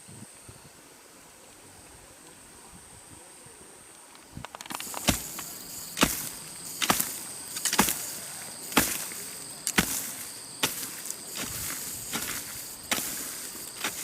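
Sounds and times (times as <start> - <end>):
hand tool chopping into soil: 4.7 - 14.0.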